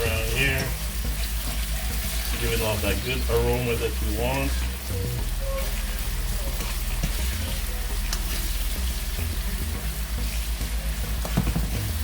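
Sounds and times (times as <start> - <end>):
vegetables sizzling in oil: 0.0 - 12.0
utensil clicking against pan: 8.0 - 8.3.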